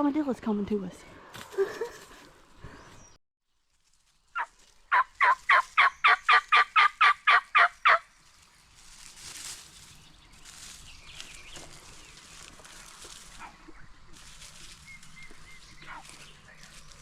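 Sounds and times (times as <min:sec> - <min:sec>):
turkey yelps: 0:04.4 - 0:08.0.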